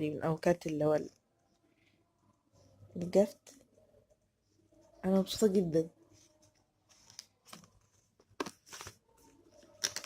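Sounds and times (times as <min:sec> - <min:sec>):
paper rustling and crinkling: 0:06.2 - 0:10.0.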